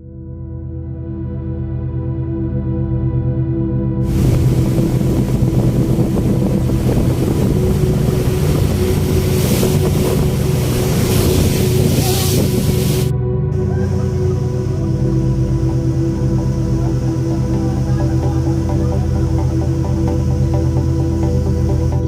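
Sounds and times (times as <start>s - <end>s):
soft background music: 0.0s - 22.0s
loud rushing noise: 4.0s - 13.1s.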